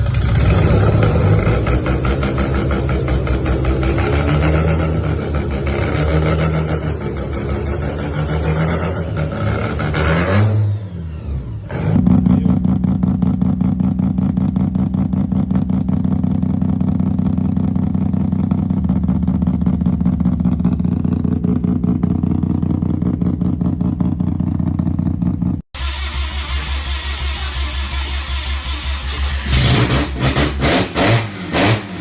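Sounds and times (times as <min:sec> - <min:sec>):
rotary engine revving: 0:00.0 - 0:17.0, 0:18.0 - 0:32.0
rotary engine idling choppily: 0:17.3 - 0:30.1.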